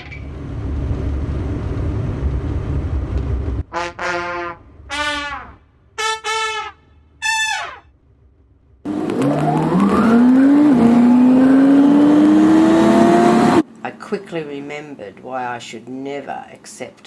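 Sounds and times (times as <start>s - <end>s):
car engine rumble: 0.3s - 3.6s, 8.7s - 14.4s
brassy horn blasts: 3.7s - 7.8s.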